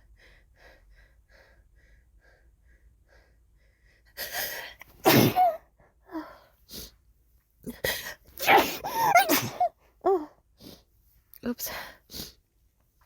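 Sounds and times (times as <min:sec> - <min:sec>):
woman sneezing: 0:05.0 - 0:05.6, 0:08.4 - 0:09.7.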